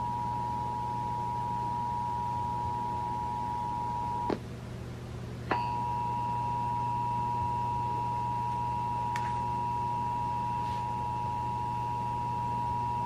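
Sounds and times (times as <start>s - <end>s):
faint high steady tone: 0.0s - 4.3s, 5.5s - 13.0s
two-tone alarm signal: 0.0s - 4.3s, 5.5s - 13.0s.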